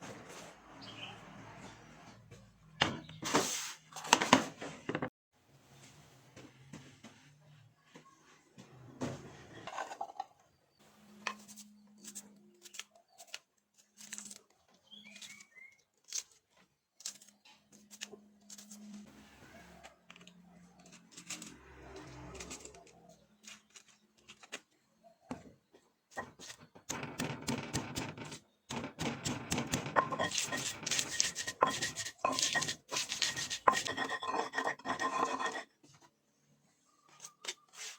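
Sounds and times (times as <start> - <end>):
utensils and dishes clattering: 28.0 - 35.7.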